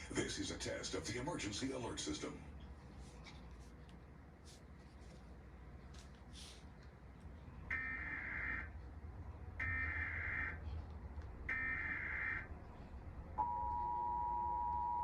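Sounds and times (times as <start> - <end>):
two-tone attention signal: 13.4 - 15.0.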